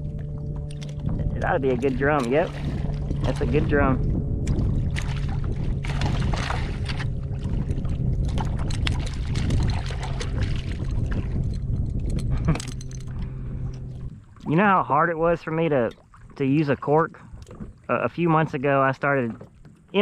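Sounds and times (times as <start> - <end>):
steady low hum: 0.0 - 19.6
water lapping against kayak hull: 0.0 - 20.0
small clicks and knocks: 0.6 - 1.2.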